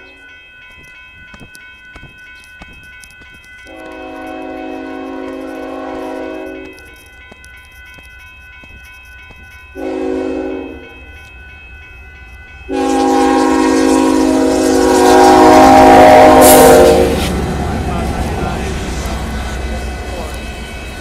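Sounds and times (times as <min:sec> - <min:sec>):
train rushing and rumbling: 0:00.1 - 0:21.0
locomotive air horn blasts: 0:03.7 - 0:06.8, 0:09.8 - 0:11.0, 0:12.7 - 0:17.4.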